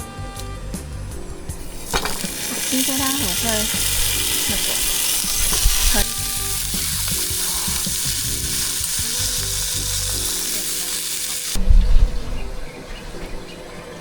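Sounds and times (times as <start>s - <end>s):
food sizzling in a hot pan: 1.6s - 11.6s.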